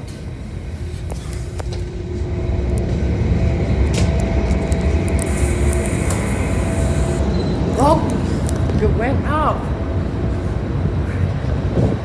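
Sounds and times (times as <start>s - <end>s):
faint steady hum: 0.0s - 12.0s
ferry engine low rumble: 0.0s - 12.0s.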